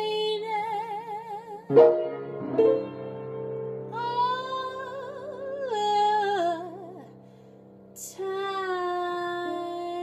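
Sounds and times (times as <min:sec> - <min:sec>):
woman singing with vibrato: 0:03.9 - 0:07.1.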